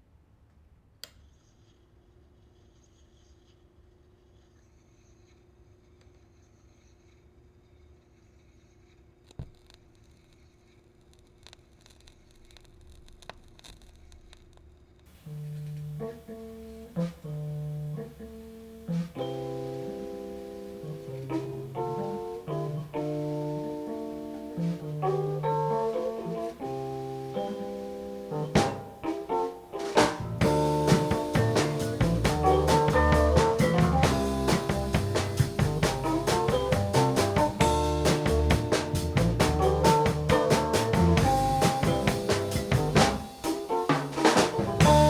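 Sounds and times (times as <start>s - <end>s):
keyboard notes: 15.3s - 45.0s
drum hits: 28.6s - 45.0s.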